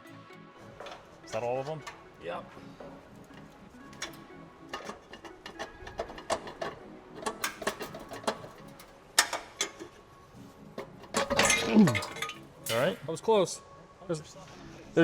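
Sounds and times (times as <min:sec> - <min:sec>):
metallic clicks of hand tools: 0:04.0 - 0:09.9.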